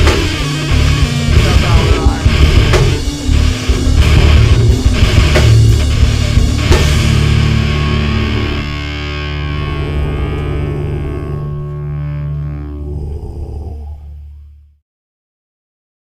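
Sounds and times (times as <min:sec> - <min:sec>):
drums playing hard: 0:00.0 - 0:10.9
distorted guitars: 0:00.0 - 0:14.6
low sustained drone: 0:00.0 - 0:14.7
bass guitar: 0:00.0 - 0:14.8.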